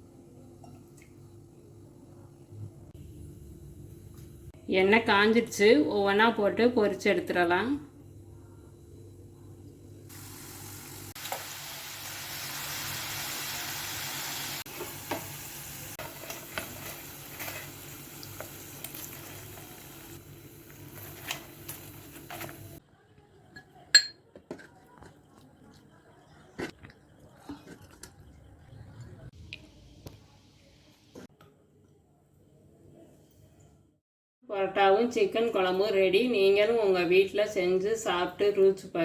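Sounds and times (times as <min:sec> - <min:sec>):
dough sizzling in hot oil: 0:10.1 - 0:22.8.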